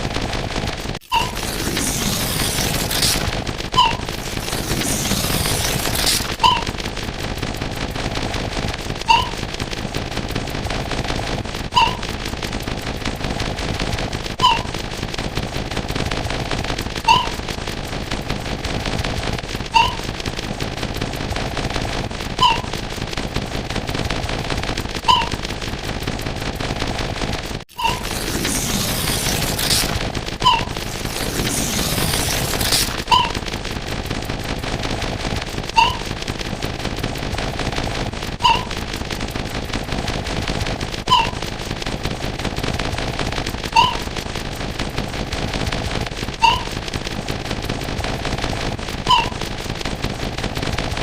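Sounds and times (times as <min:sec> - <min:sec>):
rapid crackle of clicks and pops: 0:00.0 - 0:51.0
short high call-like tone: 0:03.8 - 0:04.0, 0:09.1 - 0:09.4, 0:11.8 - 0:12.0, 0:14.4 - 0:14.7, 0:19.8 - 0:20.0, 0:22.4 - 0:22.6, 0:35.8 - 0:36.1, 0:38.4 - 0:38.7, 0:46.4 - 0:46.7, 0:49.1 - 0:49.3
short rising chirp: 0:35.8 - 0:36.0.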